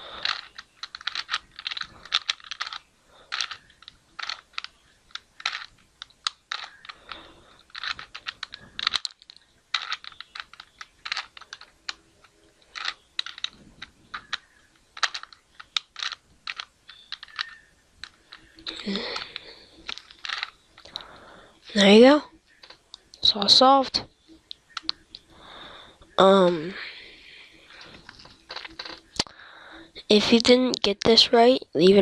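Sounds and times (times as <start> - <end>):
puzzle cube layers clicking: 0.2 - 23.6.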